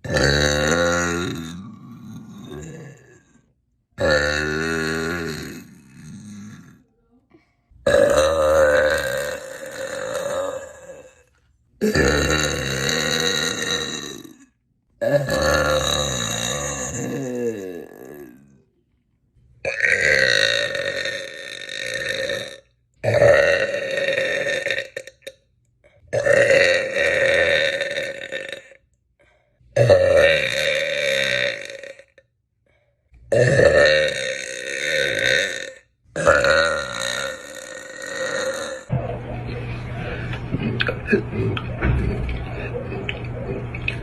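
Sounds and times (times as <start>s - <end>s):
woman burping: 0.0s - 3.2s, 4.0s - 6.9s, 7.8s - 11.2s, 11.8s - 18.5s, 19.6s - 25.4s, 26.1s - 28.8s, 29.8s - 32.2s, 33.3s - 38.9s.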